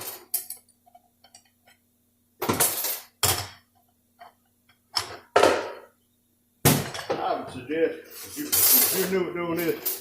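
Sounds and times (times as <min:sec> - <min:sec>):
metal parts clinking and clanking: 0:08.2 - 0:10.0.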